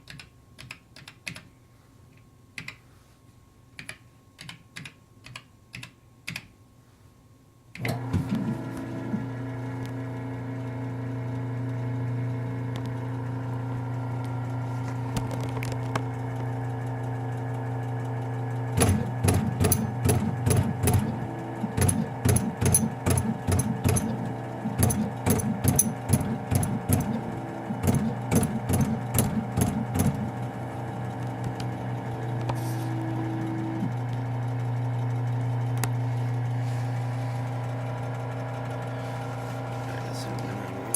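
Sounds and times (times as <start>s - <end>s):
machine humming: 7.8s - 40.9s
machine tapping strokes: 18.8s - 30.3s.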